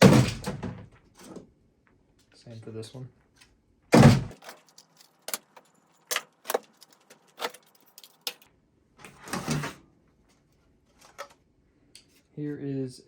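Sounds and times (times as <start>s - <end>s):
loud thump: 4.0s - 4.3s
plastic devices clicking and clattering: 4.3s - 8.5s.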